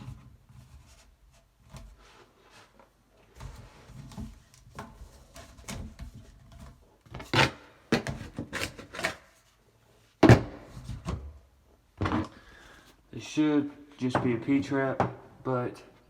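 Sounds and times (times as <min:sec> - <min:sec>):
plastic pipe parts rubbing and scraping: 0:00.0 - 0:09.6.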